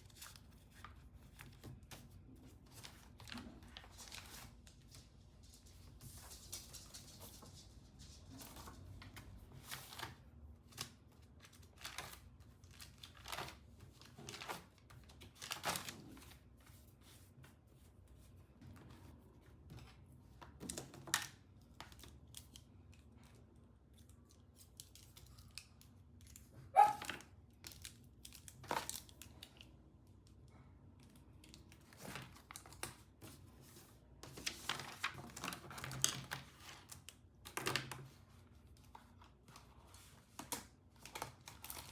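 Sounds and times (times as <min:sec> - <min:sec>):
paper rustling: 0:00.0 - 0:22.5, 0:31.8 - 0:37.0.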